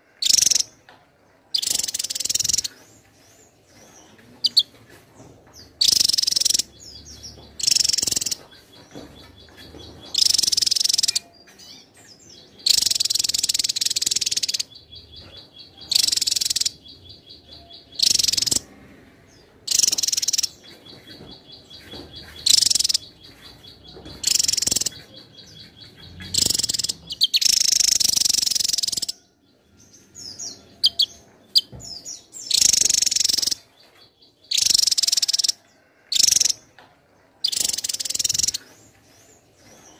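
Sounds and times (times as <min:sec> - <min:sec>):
rapid ticking bird trill: 0:00.2 - 0:00.7, 0:01.6 - 0:02.7, 0:05.8 - 0:11.3, 0:12.6 - 0:18.7, 0:19.7 - 0:20.7, 0:21.6 - 0:29.3, 0:30.8 - 0:31.7, 0:32.4 - 0:33.7, 0:34.5 - 0:36.6, 0:37.4 - 0:38.6
bird singing high-pitched phrases: 0:00.2 - 0:00.8, 0:01.6 - 0:02.8, 0:05.8 - 0:18.7, 0:19.7 - 0:29.3, 0:30.0 - 0:35.6, 0:37.4 - 0:38.7.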